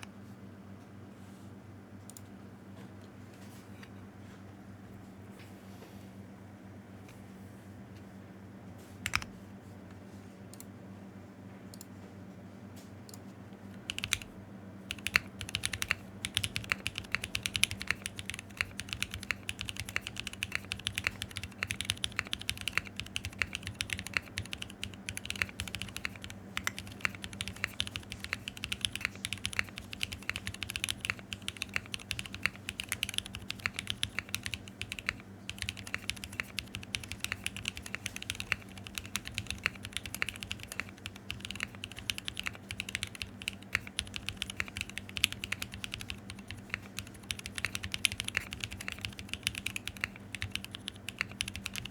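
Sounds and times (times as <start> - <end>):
rapid mechanical keyboard typing: 9.1 - 9.3, 13.8 - 14.3, 14.9 - 51.9.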